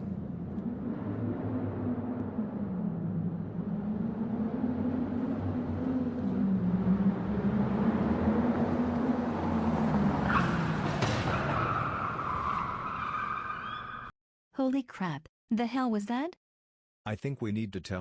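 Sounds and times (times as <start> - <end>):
car engine revving: 0.0 - 12.7.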